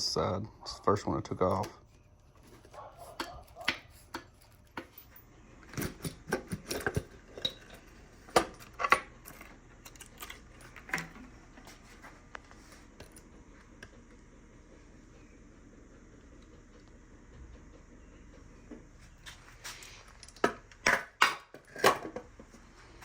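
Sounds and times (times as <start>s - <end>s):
metal tools clinking and clanking: 2.4s - 11.3s, 19.7s - 22.2s.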